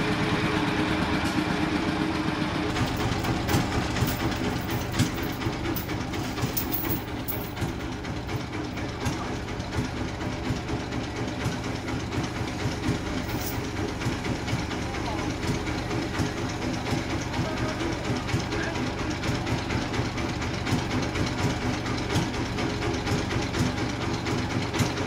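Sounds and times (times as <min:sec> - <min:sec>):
bandsaw running with low hum: 0:02.5 - 0:10.6, 0:11.5 - 0:17.0.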